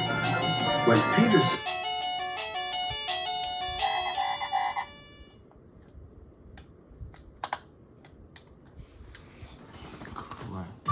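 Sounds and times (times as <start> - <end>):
musical chime notes: 0.0 - 5.3.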